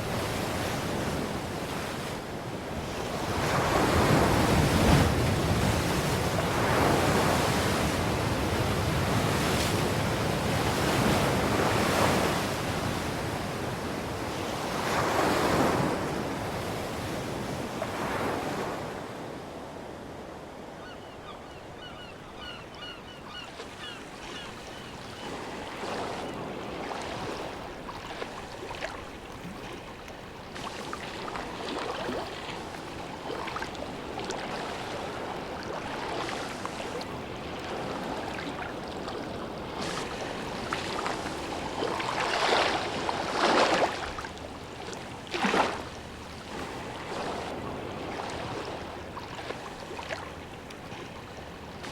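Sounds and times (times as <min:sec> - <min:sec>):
sea waves breaking on beach: 0:00.0 - 0:20.6, 0:21.8 - 0:51.9
water lapping and splashing: 0:22.4 - 0:51.9.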